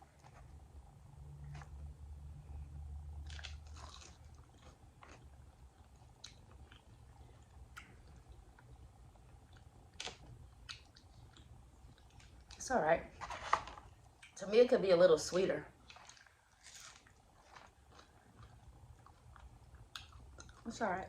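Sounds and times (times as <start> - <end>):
low steady hum: 0.0 - 21.0
crunching and chewing: 2.5 - 12.6, 15.8 - 21.0.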